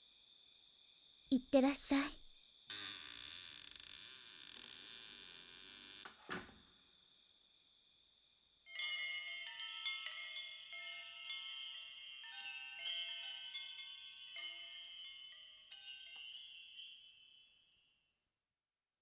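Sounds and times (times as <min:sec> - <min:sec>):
music with tinkling chime notes: 0:08.7 - 0:18.1.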